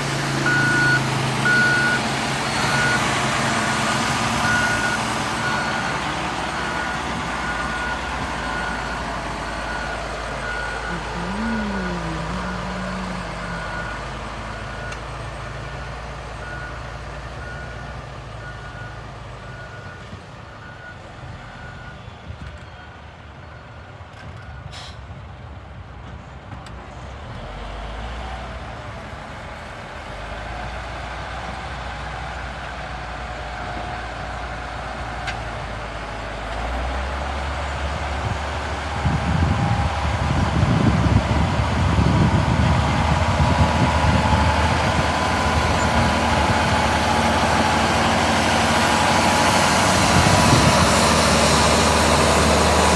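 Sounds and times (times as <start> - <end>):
machinery engine running: 0.0 - 15.6, 32.2 - 52.9
reversing alarm beeping: 0.1 - 15.0.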